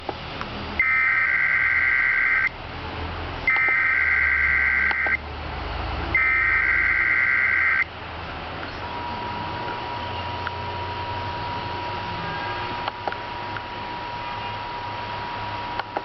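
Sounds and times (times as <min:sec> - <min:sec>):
warbling digital data tones: 0:00.8 - 0:02.5, 0:03.5 - 0:05.2, 0:06.2 - 0:07.9
radio hiss: 0:00.8 - 0:02.6, 0:03.5 - 0:05.2, 0:06.2 - 0:07.9.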